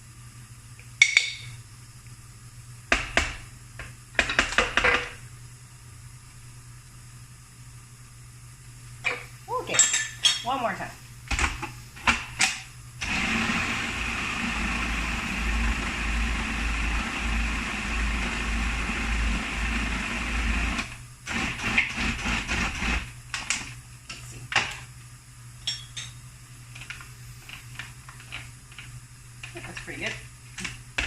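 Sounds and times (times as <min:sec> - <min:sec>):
food processor running: 0:13.0 - 0:23.2.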